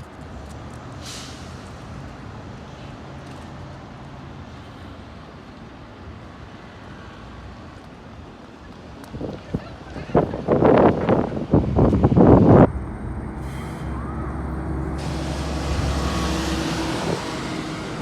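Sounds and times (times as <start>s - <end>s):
bus engine hum: 0.0s - 18.0s
air brake hiss: 1.0s - 1.7s, 13.2s - 18.0s.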